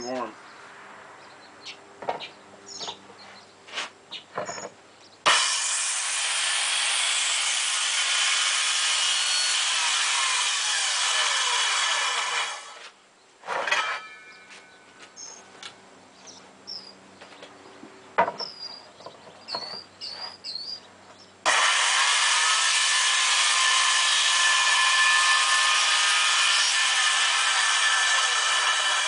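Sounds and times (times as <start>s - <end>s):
circular saw cutting wood: 5.2s - 14.2s, 21.4s - 29.0s.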